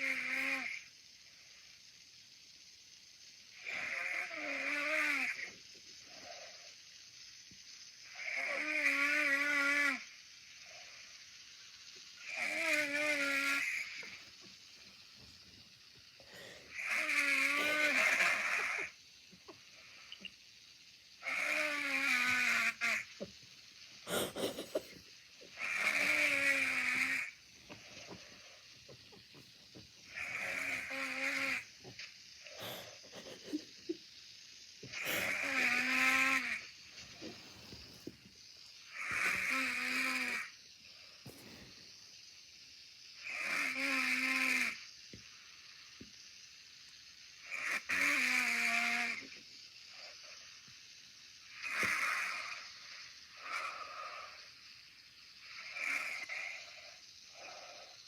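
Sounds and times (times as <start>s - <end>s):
man snoring: 0.0s - 0.8s, 3.6s - 5.5s, 8.1s - 10.1s, 16.2s - 18.9s, 25.6s - 27.4s, 30.1s - 31.7s, 32.4s - 33.6s, 34.9s - 38.1s, 38.9s - 40.5s.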